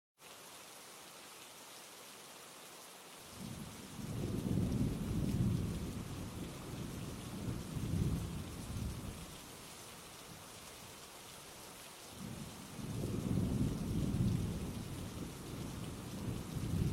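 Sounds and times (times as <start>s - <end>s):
steady rainfall hiss: 0.2s - 16.9s
rolling thunder: 12.8s - 16.9s.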